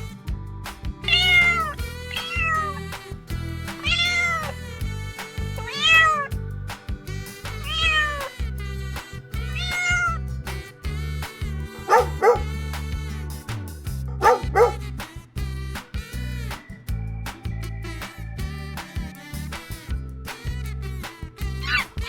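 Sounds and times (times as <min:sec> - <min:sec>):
music with steady beat: 0:00.0 - 0:22.0
cat meowing: 0:01.0 - 0:02.9, 0:03.8 - 0:04.6, 0:05.6 - 0:06.4, 0:07.6 - 0:08.3, 0:09.5 - 0:10.2, 0:11.9 - 0:12.5, 0:14.2 - 0:14.8, 0:21.6 - 0:22.0.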